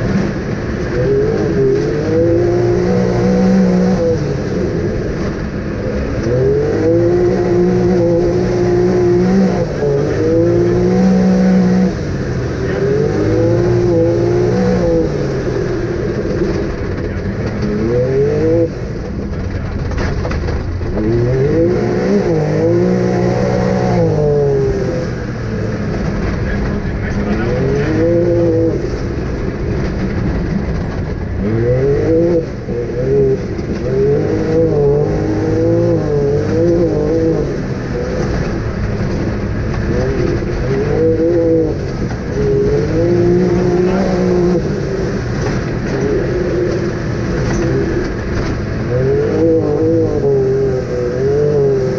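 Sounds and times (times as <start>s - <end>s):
off-road vehicle engine revving: 0.0s - 51.9s.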